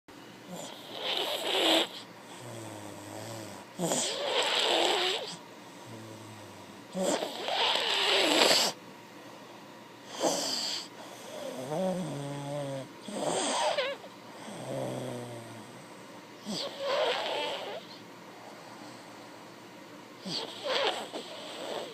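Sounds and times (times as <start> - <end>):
low humming breaths: 0.4 - 21.9
loud rasping snores: 0.5 - 8.8, 10.1 - 15.8, 16.4 - 18.0, 20.2 - 21.9.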